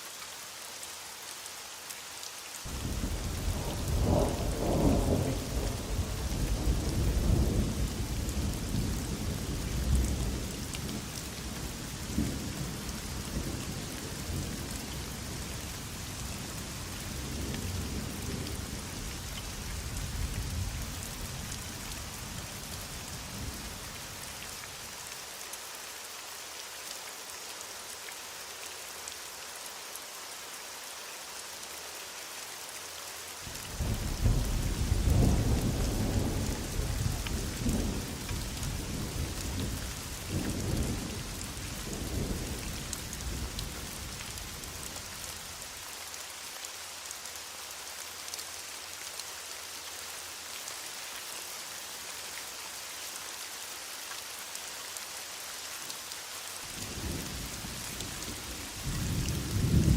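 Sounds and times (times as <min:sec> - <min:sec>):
heavy rain falling: 0:00.0 - 0:59.9
thunder rumbling: 0:58.9 - 0:59.9.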